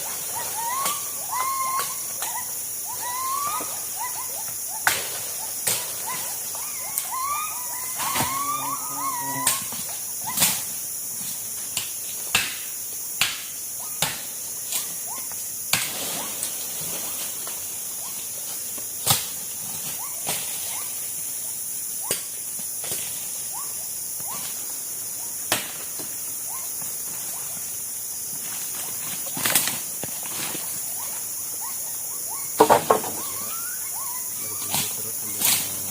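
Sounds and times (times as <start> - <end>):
rainforest insects droning: 0.0 - 35.9
sharp knocks: 32.6 - 33.3.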